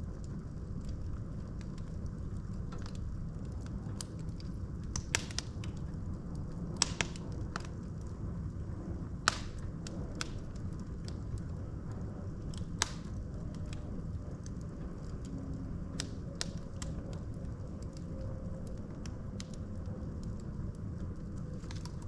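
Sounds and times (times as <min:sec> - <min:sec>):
burning logs crackling: 0:00.0 - 0:22.0
low rumble of flame: 0:00.0 - 0:22.0
sharp fire pops: 0:03.9 - 0:05.9, 0:06.6 - 0:08.1, 0:09.1 - 0:11.5, 0:12.4 - 0:13.9.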